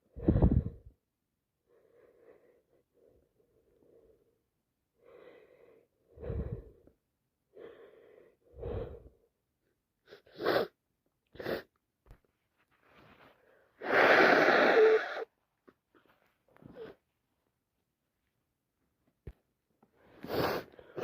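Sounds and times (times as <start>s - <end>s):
woman blowing nose: 10.1s - 10.8s, 11.4s - 11.7s, 13.8s - 15.3s, 20.2s - 21.0s.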